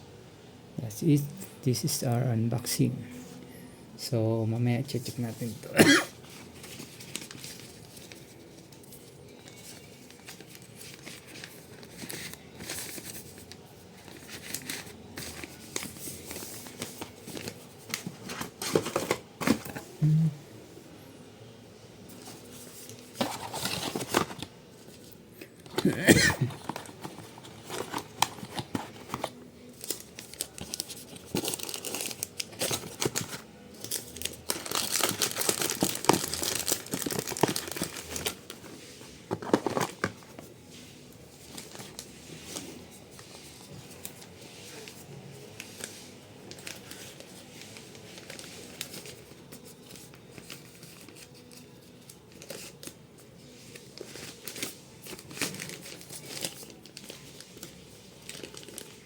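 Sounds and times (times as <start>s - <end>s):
plastic wrappers crinkling: 4.9s - 19.7s, 22.2s - 59.0s.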